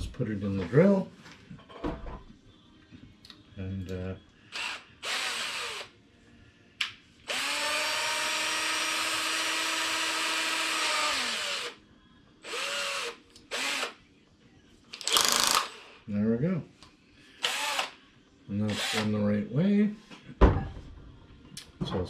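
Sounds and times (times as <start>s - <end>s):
electric drill spinning: 4.5s - 5.9s, 7.3s - 11.8s, 12.4s - 14.0s, 15.0s - 16.0s, 17.4s - 18.0s, 18.7s - 19.1s.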